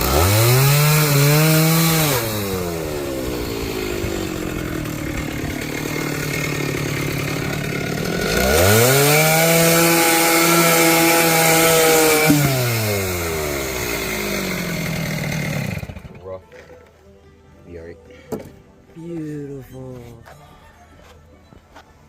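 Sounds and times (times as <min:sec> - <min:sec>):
chainsaw engine revving: 0:00.0 - 0:16.4
chainsaw cutting wooden beam: 0:00.0 - 0:16.9.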